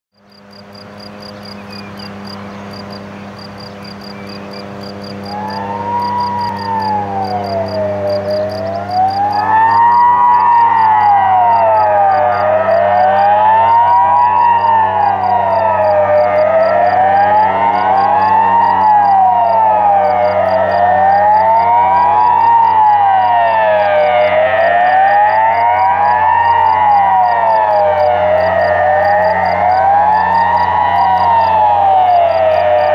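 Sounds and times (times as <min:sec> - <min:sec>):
cricket chirping: 0:00.2 - 0:13.3, 0:24.6 - 0:32.9
steady low hum: 0:00.2 - 0:32.9
siren rising wail: 0:00.4 - 0:32.9.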